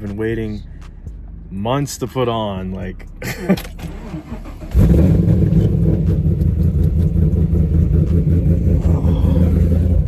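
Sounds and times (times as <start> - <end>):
car engine starting and idling: 3.2 - 10.0.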